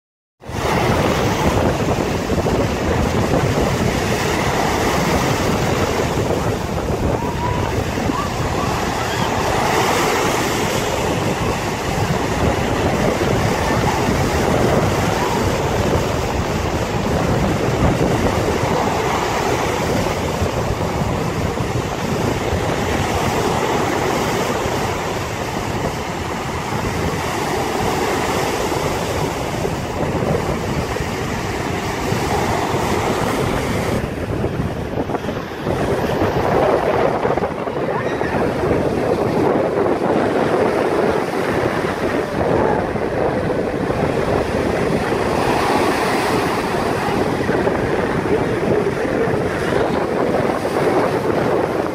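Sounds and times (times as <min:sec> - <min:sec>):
waves breaking on shore: 0:00.4 - 0:51.9
wind buffeting microphone: 0:00.4 - 0:51.9.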